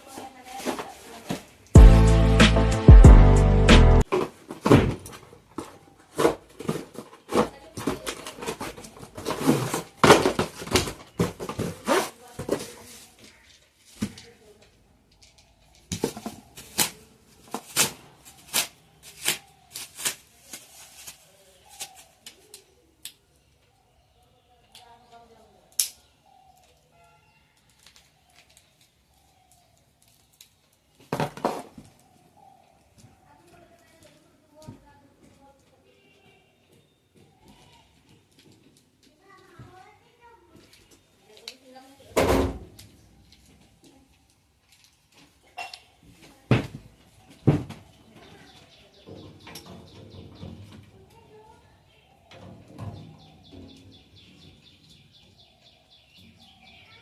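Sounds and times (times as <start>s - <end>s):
packaging rustling: 4.0s - 14.4s, 16.0s - 22.6s.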